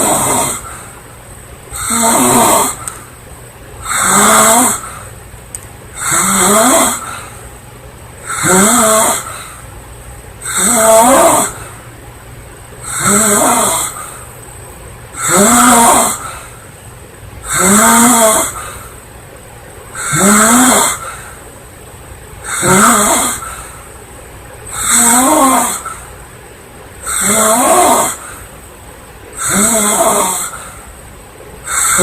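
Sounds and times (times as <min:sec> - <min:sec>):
woman snoring: 0:00.0 - 0:00.7, 0:01.8 - 0:02.8, 0:03.8 - 0:05.0, 0:06.0 - 0:07.2, 0:08.3 - 0:09.5, 0:10.4 - 0:11.7, 0:12.8 - 0:14.1, 0:15.2 - 0:16.4, 0:17.5 - 0:18.7, 0:20.1 - 0:21.0, 0:22.6 - 0:23.6, 0:24.8 - 0:25.9, 0:27.2 - 0:28.3, 0:29.4 - 0:30.6
quiet breathing: 0:07.0 - 0:07.6, 0:09.2 - 0:09.8, 0:16.2 - 0:16.8, 0:18.5 - 0:19.1, 0:23.3 - 0:24.0.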